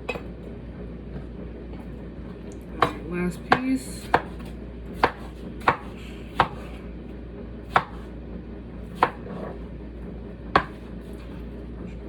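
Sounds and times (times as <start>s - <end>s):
knife chopping on cutting board: 2.8s - 6.8s, 7.7s - 8.1s, 8.9s - 9.6s, 10.5s - 11.4s.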